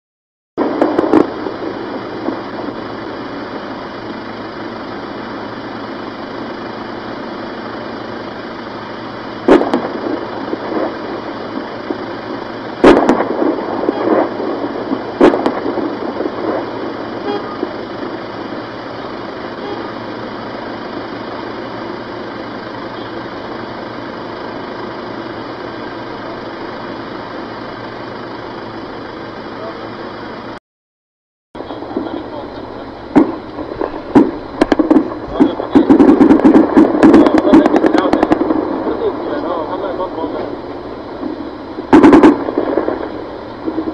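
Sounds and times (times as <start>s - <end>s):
gunshots with echoes: 12.8s - 14.4s.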